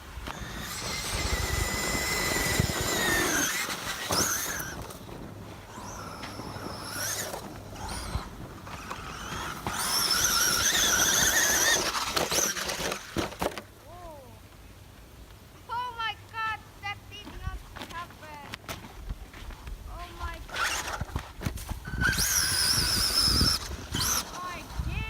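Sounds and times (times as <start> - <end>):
electric motor whining: 0.0 - 13.6, 20.2 - 25.0.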